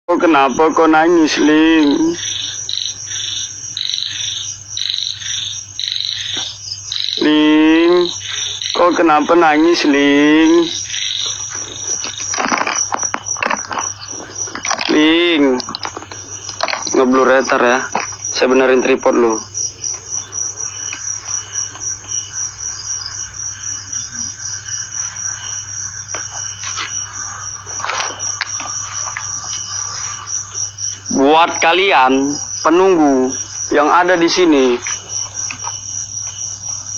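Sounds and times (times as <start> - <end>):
crickets trilling: 0.1 - 36.9
frogs calling: 0.1 - 36.9
steady high background tone: 0.1 - 36.9.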